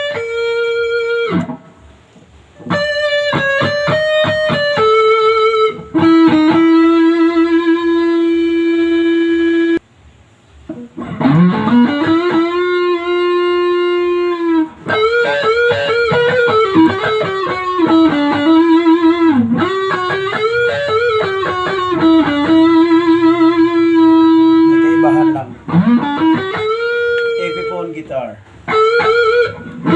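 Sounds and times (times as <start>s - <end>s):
electric guitar lead melody: 0.0s - 1.9s, 2.6s - 9.8s, 10.6s - 29.9s.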